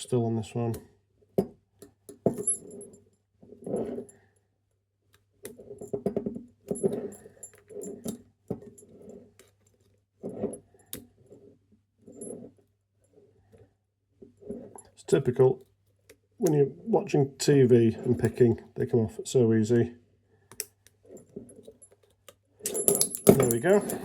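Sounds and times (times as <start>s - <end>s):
handcuffs clicking and rattling: 21.6s - 24.0s.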